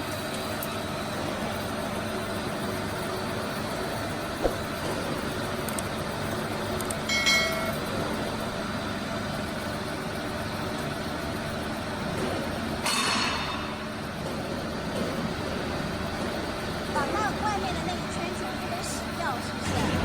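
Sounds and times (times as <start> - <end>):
machinery running: 0.9 - 20.0
metallic ring: 7.1 - 7.8, 12.8 - 13.9
metallic clank: 12.8 - 13.9.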